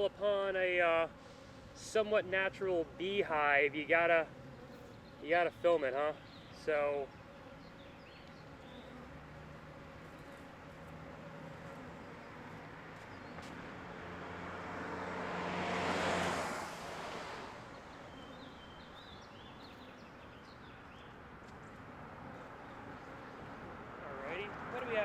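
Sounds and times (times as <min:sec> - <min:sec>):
car passing: 0:08.4 - 0:25.0.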